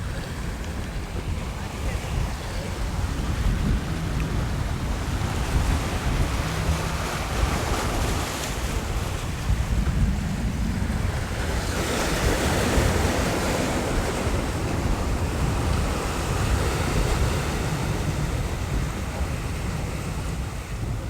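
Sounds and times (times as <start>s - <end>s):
ocean waves washing ashore: 0.0s - 21.0s
wind rumbling on microphone: 0.0s - 21.0s.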